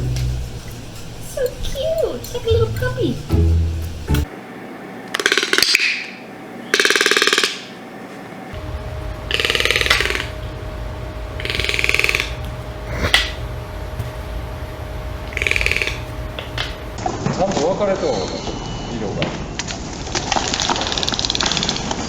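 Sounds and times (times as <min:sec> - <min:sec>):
toucan croaking calls: 0:05.2 - 0:07.8, 0:09.2 - 0:10.5, 0:11.3 - 0:13.4, 0:15.2 - 0:16.9.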